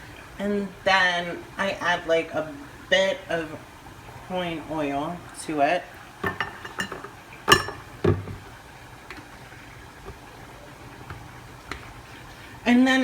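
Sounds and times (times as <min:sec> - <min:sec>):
kitchen background noise: 0:00.0 - 0:13.0
kitchenware knocking on a counter: 0:06.2 - 0:08.4.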